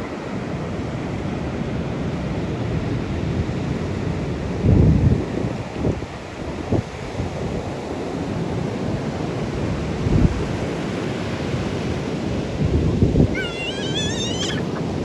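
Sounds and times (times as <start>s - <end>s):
wind rumbling on microphone: 4.6s - 15.0s
waves surging and breaking: 6.1s - 15.0s.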